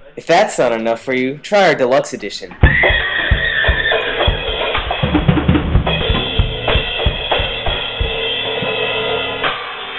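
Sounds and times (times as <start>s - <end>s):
music with drum kit beats: 2.5s - 9.9s.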